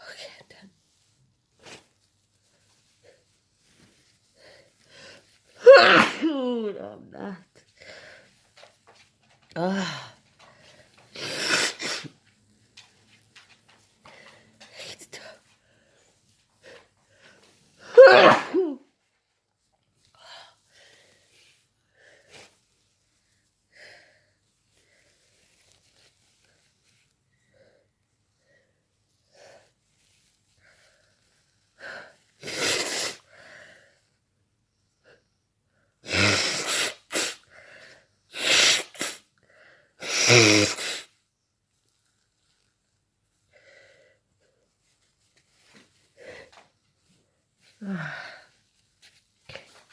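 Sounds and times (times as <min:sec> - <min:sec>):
soft breaths: 0:00.0 - 0:05.6, 0:07.4 - 0:17.9, 0:19.1 - 0:32.4, 0:33.1 - 0:36.0, 0:36.9 - 0:38.3, 0:41.0 - 0:49.9
person sneezing: 0:05.6 - 0:06.8, 0:11.2 - 0:12.1, 0:17.8 - 0:18.8, 0:32.4 - 0:33.2, 0:36.1 - 0:37.4, 0:38.4 - 0:39.2, 0:40.0 - 0:41.1.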